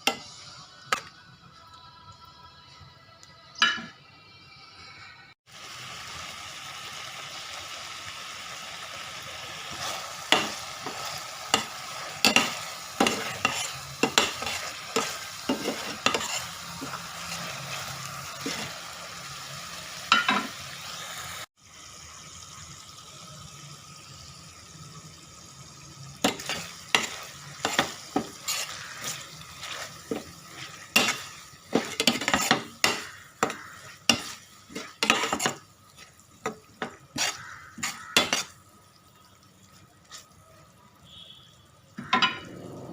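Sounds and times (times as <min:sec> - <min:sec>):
spoon knocking and scraping pan: 0:00.0 - 0:01.1, 0:09.7 - 0:18.8, 0:20.1 - 0:20.6, 0:26.2 - 0:38.6, 0:42.0 - 0:42.6
food sizzling in hot oil: 0:00.0 - 0:02.2, 0:04.9 - 0:42.9.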